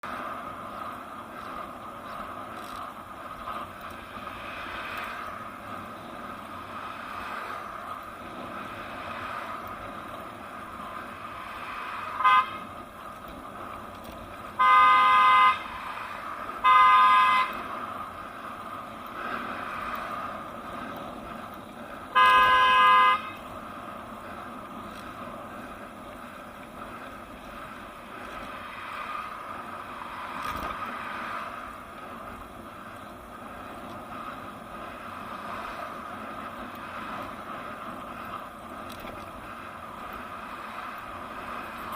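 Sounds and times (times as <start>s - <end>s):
car horn honking: 12.2s - 12.7s, 14.6s - 15.7s, 16.6s - 17.6s, 22.2s - 23.4s.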